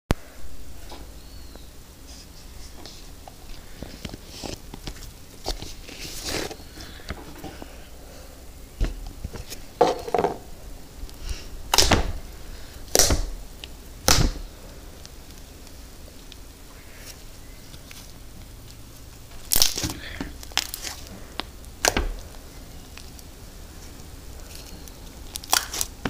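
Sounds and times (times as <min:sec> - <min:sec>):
slime squishing and popping: 0:11.0 - 0:16.4, 0:19.4 - 0:23.3, 0:24.4 - 0:26.0
loud slime squelches: 0:11.1 - 0:26.0.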